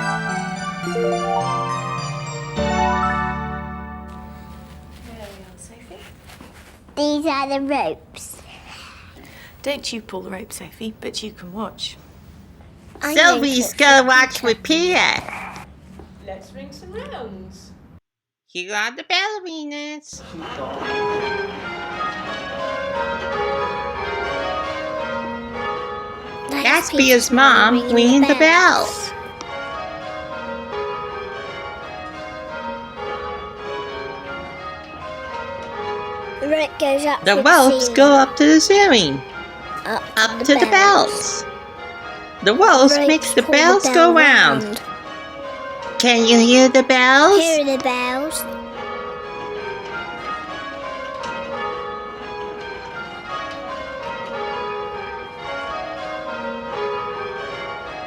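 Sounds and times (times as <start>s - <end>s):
church bells ringing in rounds: 0.0s - 4.8s, 13.0s - 15.0s, 20.8s - 58.0s.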